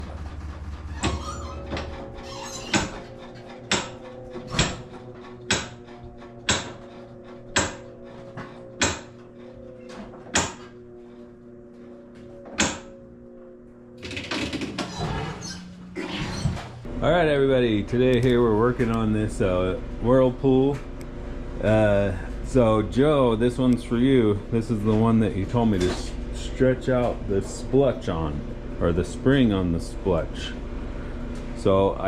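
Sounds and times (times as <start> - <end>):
washing machine clicking: 0.0 - 8.0
washing machine humming: 0.0 - 32.0.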